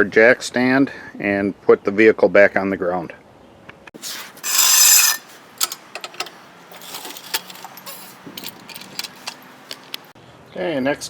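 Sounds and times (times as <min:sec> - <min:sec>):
hiss-like scrape: 0:04.0 - 0:05.4
metallic clicks and rattles: 0:04.4 - 0:10.1.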